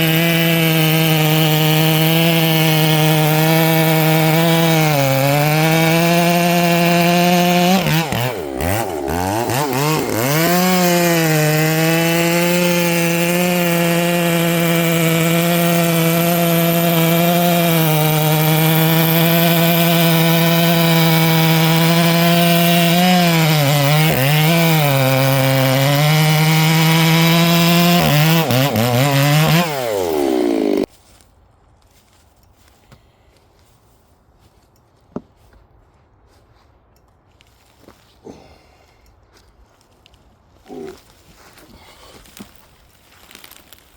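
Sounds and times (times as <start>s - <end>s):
chainsaw cutting log: 0.0s - 30.9s, 40.7s - 43.9s.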